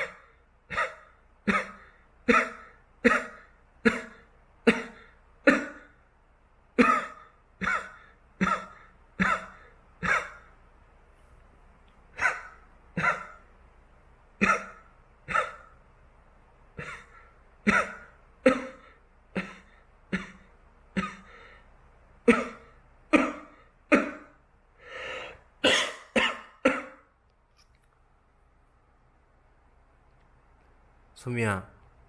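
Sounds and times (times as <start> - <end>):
person coughing: 0.0 - 6.0, 6.8 - 10.5, 12.2 - 13.4, 14.4 - 15.7, 16.8 - 21.6, 22.2 - 24.4, 25.6 - 27.1.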